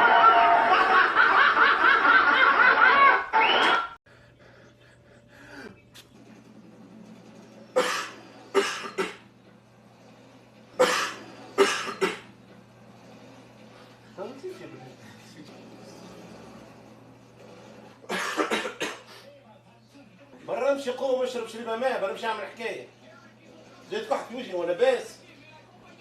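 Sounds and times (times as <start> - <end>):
loud laughter: 0.0 - 4.0
person fake coughing: 7.8 - 9.2, 10.8 - 12.3, 18.1 - 19.1.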